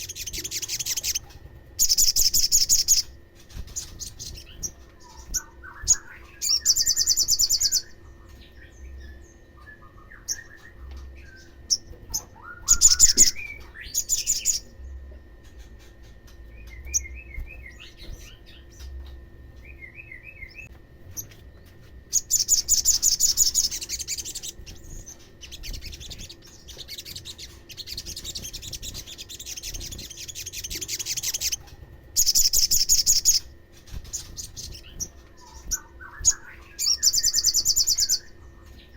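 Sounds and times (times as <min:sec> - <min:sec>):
bird trilling: 0:00.0 - 0:14.8, 0:22.1 - 0:38.4
bird twittering chirps: 0:00.0 - 0:38.9.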